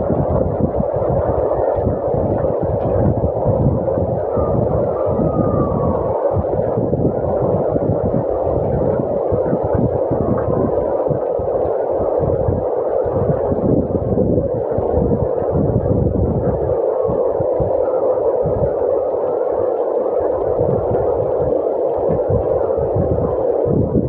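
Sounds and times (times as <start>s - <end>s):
wind buffeting microphone: 0.0s - 24.0s
faint wavering whistle: 4.3s - 6.4s.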